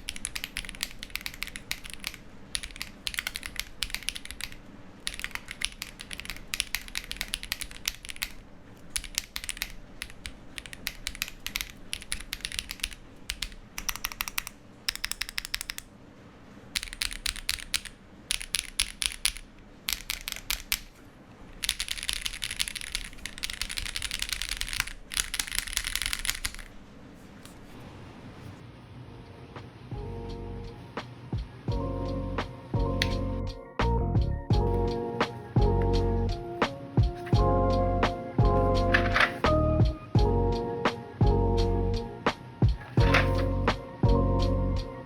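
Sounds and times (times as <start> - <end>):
mechanical keyboard typing: 0.0 - 15.9, 16.8 - 21.0, 21.6 - 26.7.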